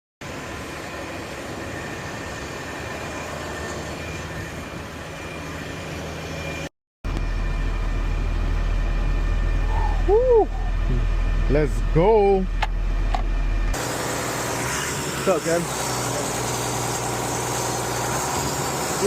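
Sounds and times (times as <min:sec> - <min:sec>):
road noise: 0:00.2 - 0:19.0
diesel truck engine: 0:04.6 - 0:19.0.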